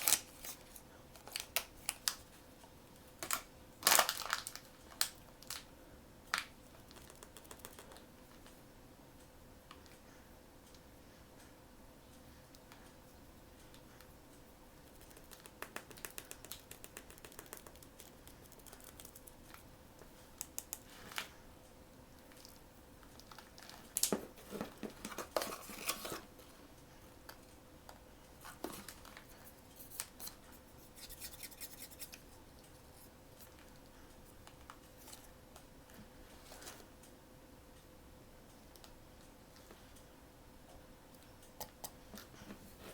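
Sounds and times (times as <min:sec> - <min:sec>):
faint steady hum: 0:00.0 - 0:42.9
plastic packaging crinkling: 0:03.2 - 0:05.7.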